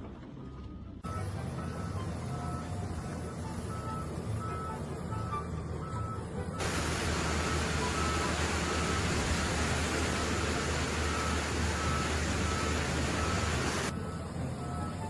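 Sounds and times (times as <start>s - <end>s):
low engine hum: 0.0s - 15.0s
reversing alarm beeping: 1.0s - 15.0s
loud steady hiss: 6.6s - 13.9s.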